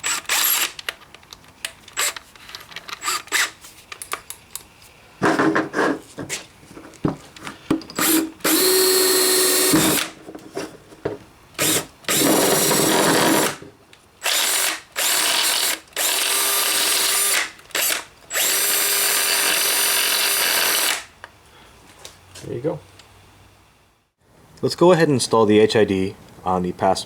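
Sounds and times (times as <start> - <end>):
power drill boring through plastic: 0.0 - 0.8, 8.0 - 10.1, 11.6 - 13.6, 14.2 - 21.1.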